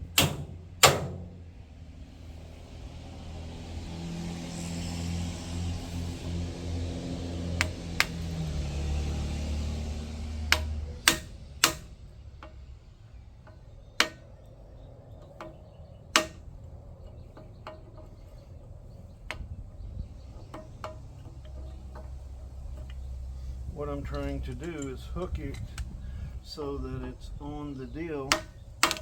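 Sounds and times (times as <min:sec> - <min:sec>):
hammer striking steel: 0:00.1 - 0:01.5, 0:10.4 - 0:12.6, 0:13.5 - 0:14.4, 0:15.4 - 0:16.5.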